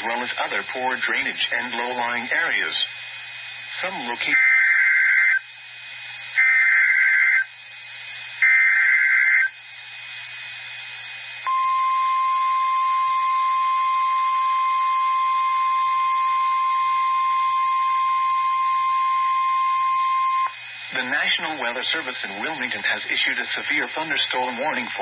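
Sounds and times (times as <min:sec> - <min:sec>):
radio hiss: 0:00.0 - 0:12.5, 0:18.0 - 0:25.0
buzzy two-pitch data tones: 0:03.7 - 0:05.5, 0:06.4 - 0:07.5, 0:08.4 - 0:09.6
steady warning alarm tone: 0:03.7 - 0:05.5, 0:06.3 - 0:07.5, 0:08.4 - 0:09.6, 0:11.4 - 0:21.5.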